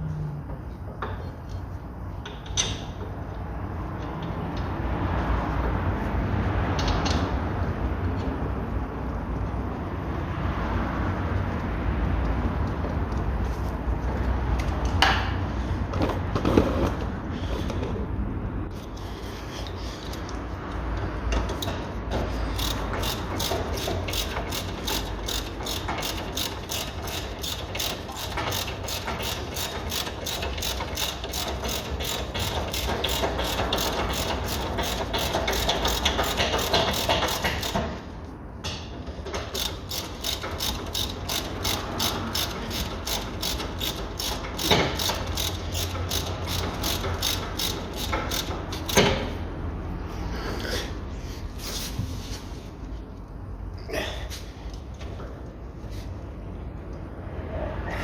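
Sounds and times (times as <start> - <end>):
ratchet wrench clicking: 21.3 - 38.1, 39.2 - 49.4.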